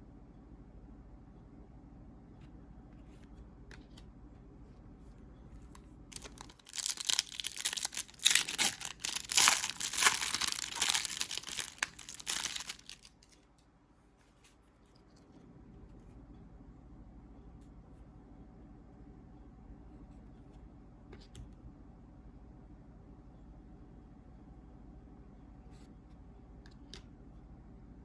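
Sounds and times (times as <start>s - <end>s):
foil wrapper tearing and crinkling: 6.1s - 13.4s.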